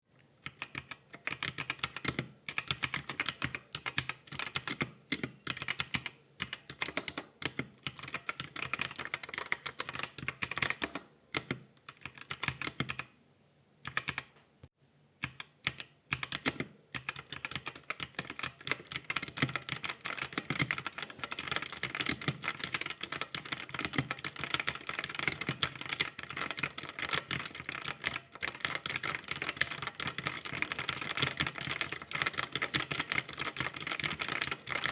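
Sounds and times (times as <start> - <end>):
keyboard typing clicks: 15.2 - 34.9.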